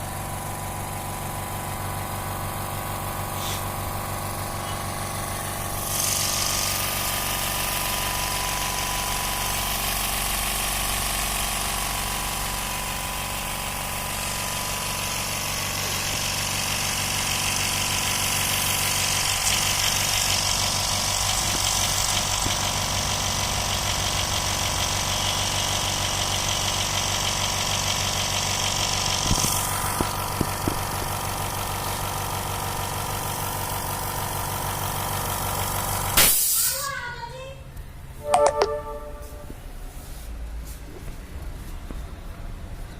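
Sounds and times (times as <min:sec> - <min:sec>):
air compressor running: 0:00.0 - 0:36.9
short clicks: 0:38.2 - 0:38.9.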